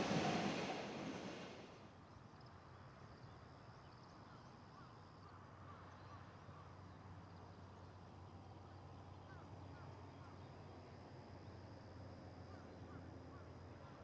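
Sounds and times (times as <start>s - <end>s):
freight train running: 0.0s - 1.8s.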